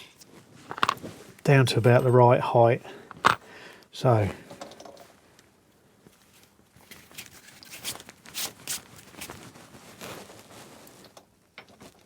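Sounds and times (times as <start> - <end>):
scrapes and rustles of parts: 0.0 - 2.2, 3.0 - 3.5, 6.2 - 12.0.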